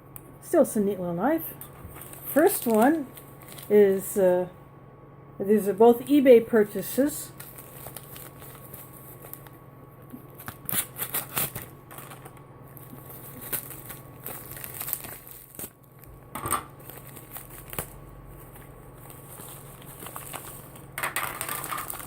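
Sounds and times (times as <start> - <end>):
packaging crinkling and tearing: 1.6 - 4.0, 7.3 - 22.0
rustling: 1.7 - 3.7, 16.8 - 22.0.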